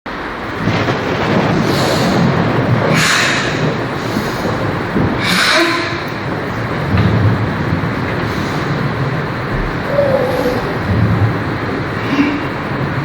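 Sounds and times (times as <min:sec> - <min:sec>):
rain: 0:00.1 - 0:13.0
low rumble: 0:00.6 - 0:13.0
forceful hissing exhalations: 0:01.5 - 0:06.3, 0:08.2 - 0:12.8.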